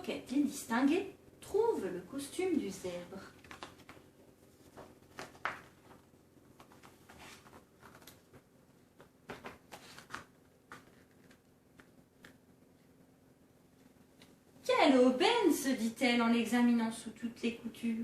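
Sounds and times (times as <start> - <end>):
short rustling scrapes: 6.8 - 8.0.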